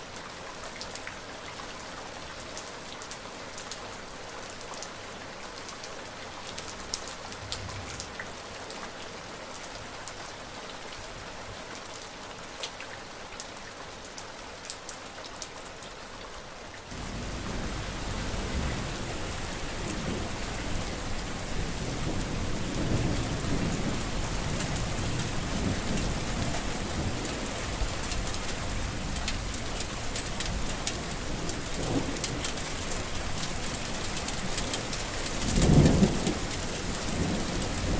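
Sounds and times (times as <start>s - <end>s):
steady rain: 0.0s - 37.9s
rolling thunder rumbles: 16.9s - 27.9s.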